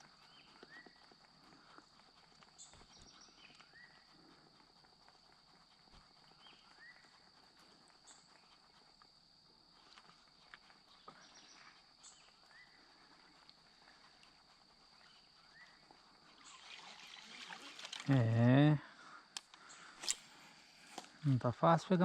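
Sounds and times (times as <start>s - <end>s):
short rising calls: 16.4s - 18.6s
faint clicks: 19.3s - 21.1s.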